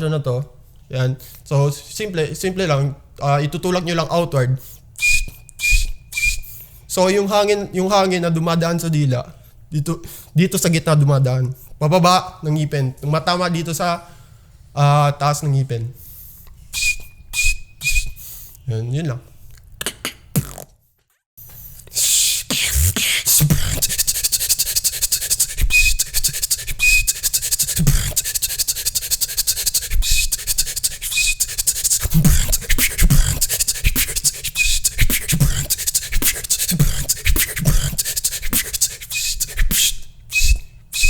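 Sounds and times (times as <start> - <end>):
tongue whistle notes: 5.0 - 6.6, 16.7 - 18.3, 22.0 - 41.0
vocal beatboxing: 16.8 - 18.2, 19.8 - 20.8, 21.8 - 41.0.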